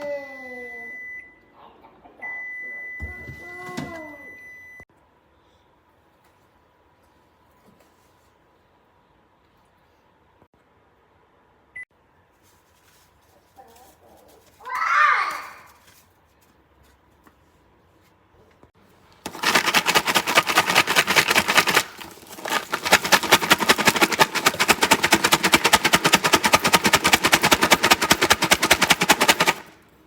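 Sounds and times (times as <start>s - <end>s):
rapid clicking: 19.3s - 29.8s.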